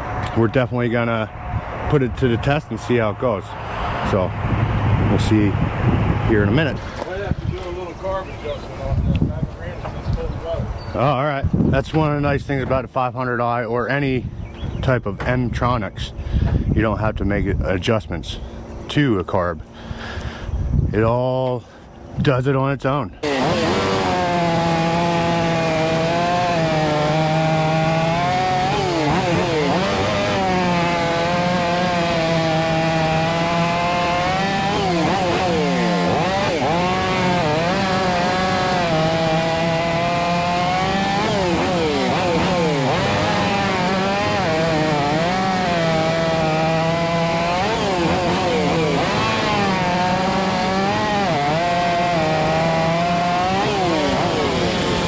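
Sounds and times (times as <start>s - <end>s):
chainsaws cutting logs: 23.2s - 55.0s.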